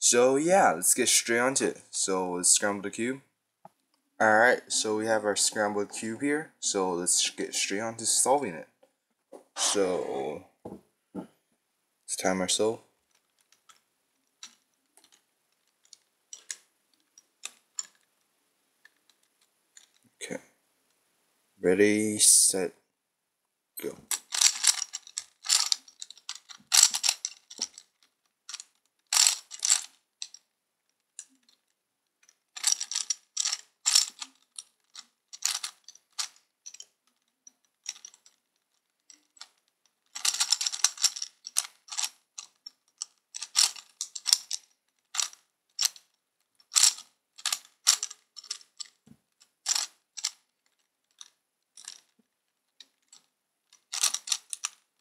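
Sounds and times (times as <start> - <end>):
puzzle cube rapid clicking: 24.1 - 27.8, 40.2 - 42.1.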